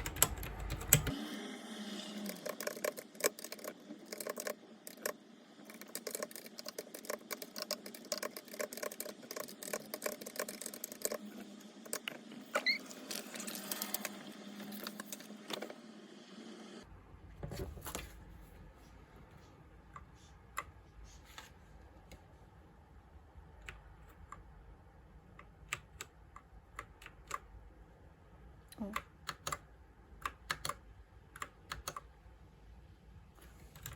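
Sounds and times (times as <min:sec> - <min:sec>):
keyboard keys clicking: 0:00.0 - 0:01.1, 0:02.3 - 0:11.3.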